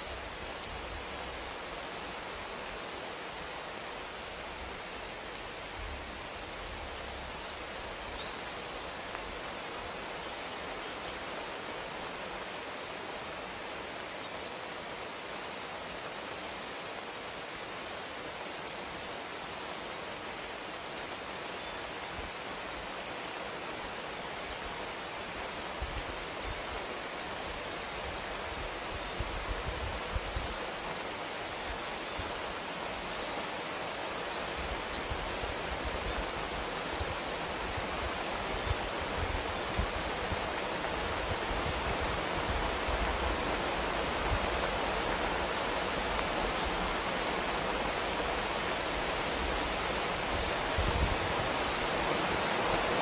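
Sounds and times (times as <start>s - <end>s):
rain hiss: 0.0s - 53.0s.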